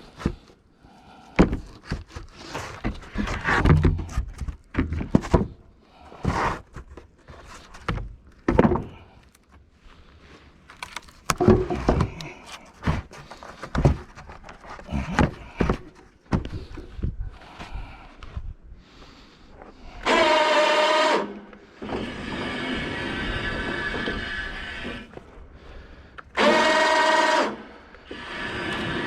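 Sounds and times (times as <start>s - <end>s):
wooden boards thunking: 7.7s - 9.1s, 10.8s - 16.6s.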